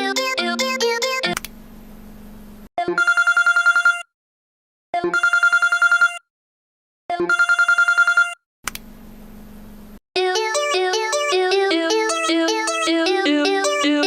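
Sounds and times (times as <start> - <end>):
telephone bell ringing: 2.9 - 4.1, 5.1 - 6.3, 7.2 - 8.4.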